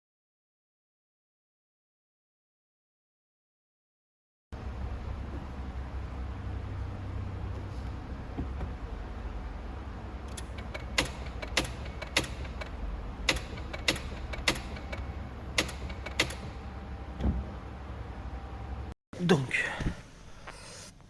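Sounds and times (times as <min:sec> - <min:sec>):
low steady rumble: 0:04.6 - 0:20.5
sharp mechanical clicks: 0:10.3 - 0:16.6.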